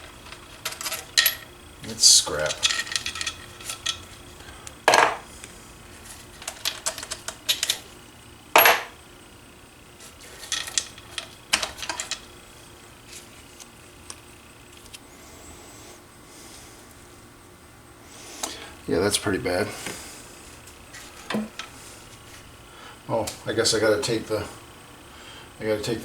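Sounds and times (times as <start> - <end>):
metal tools clinking: 0.0 - 5.2, 6.1 - 7.9, 8.6 - 9.0, 10.1 - 12.3.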